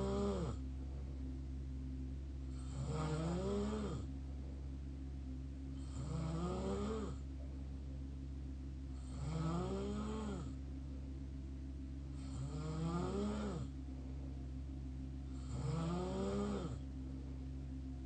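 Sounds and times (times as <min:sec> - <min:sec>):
mouth snoring: 0:00.0 - 0:00.6, 0:02.5 - 0:04.1, 0:05.8 - 0:07.2, 0:09.0 - 0:10.6, 0:12.2 - 0:13.7, 0:15.4 - 0:16.8
steady low hum: 0:00.0 - 0:18.0.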